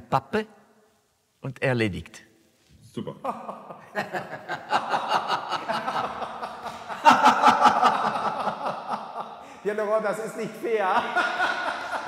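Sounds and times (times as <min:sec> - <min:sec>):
people laughing: 0:03.2 - 0:09.6, 0:10.7 - 0:12.0.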